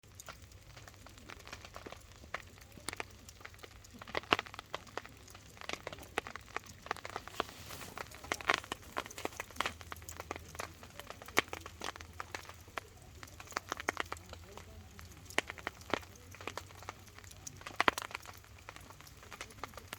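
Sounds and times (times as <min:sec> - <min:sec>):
campfire crackling and popping: 0:00.0 - 0:19.9.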